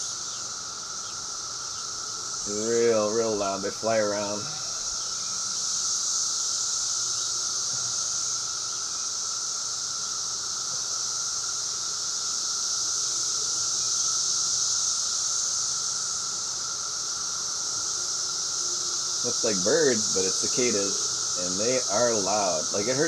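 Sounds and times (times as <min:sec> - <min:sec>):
cicadas droning buzz: 0:00.0 - 0:23.0
low steady whirring tone: 0:00.0 - 0:23.0.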